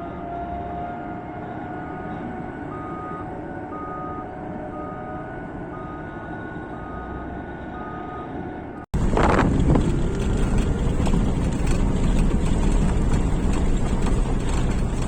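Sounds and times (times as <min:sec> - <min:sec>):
truck backup alarm beeping: 0:01.4 - 0:08.8
heavy machinery rumble: 0:09.0 - 0:15.0.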